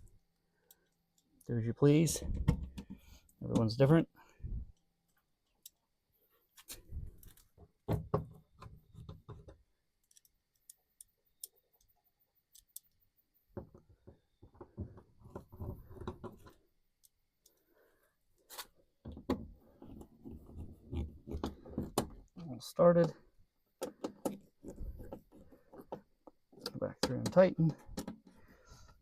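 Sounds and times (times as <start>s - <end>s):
bolts clicking and clattering: 19.0s - 29.0s.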